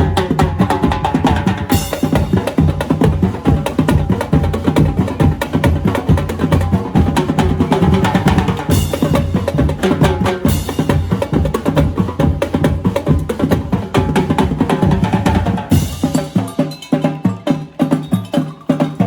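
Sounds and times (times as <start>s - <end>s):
drum corps playing: 0.0s - 19.0s.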